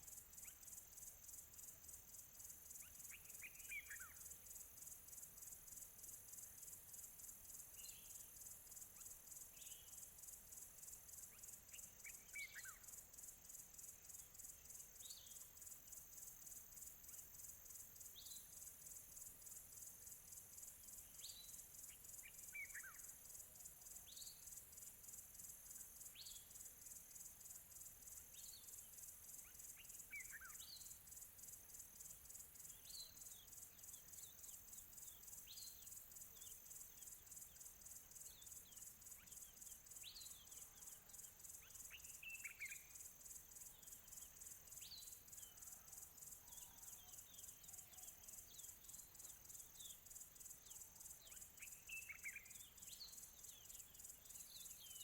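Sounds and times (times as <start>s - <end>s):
insect trill: 0.0s - 55.0s
faint birds chirping: 20.5s - 55.0s.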